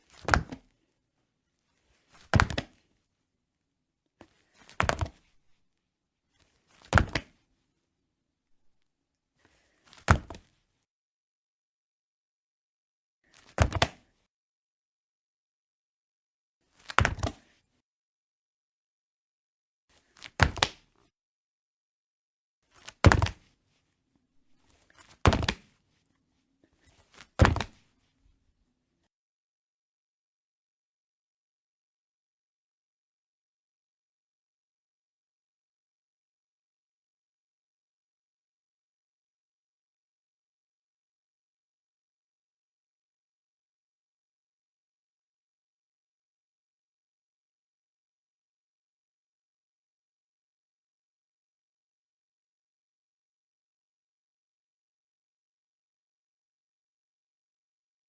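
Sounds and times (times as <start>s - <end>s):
body hitting the floor: 2.2s - 2.8s, 10.0s - 10.5s, 22.9s - 23.5s, 25.0s - 25.7s, 27.2s - 27.8s
short scuff: 26.8s - 27.8s
body thudding on floor: 27.4s - 27.8s.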